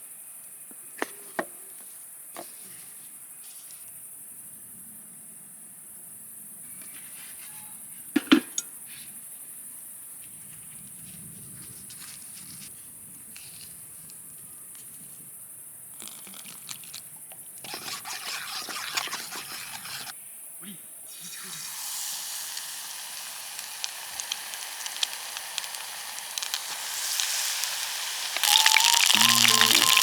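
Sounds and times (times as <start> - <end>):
food sizzling in hot oil: 21.1 - 30.0.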